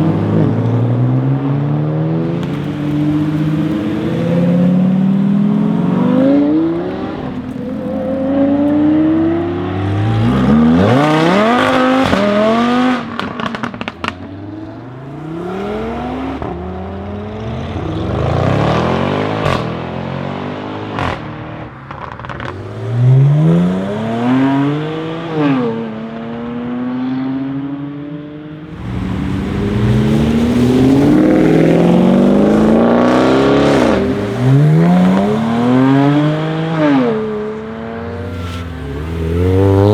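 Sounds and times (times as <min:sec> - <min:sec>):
car engine accelerating hard: 0:00.0 - 0:39.9
exhaust crackles: 0:28.5 - 0:39.9.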